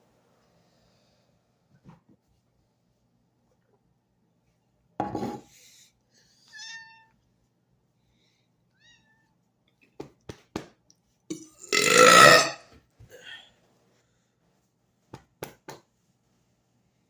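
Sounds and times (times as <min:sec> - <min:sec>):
high-pitched meow-like call: 0:06.5 - 0:07.2, 0:08.8 - 0:09.3
man burping: 0:11.3 - 0:12.7.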